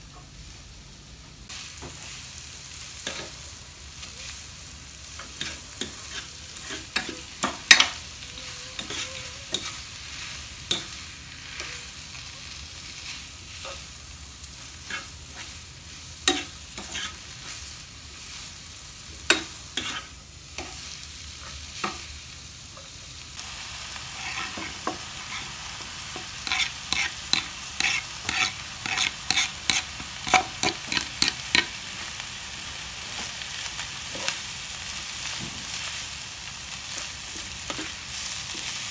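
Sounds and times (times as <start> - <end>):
food sizzling in a pan: 0.0 - 38.9
spatula clicking and scraping pan: 3.0 - 3.4, 5.1 - 8.1, 8.7 - 11.8, 14.8 - 15.6, 16.2 - 17.6, 19.3 - 22.1, 24.1 - 31.8, 36.9 - 38.8.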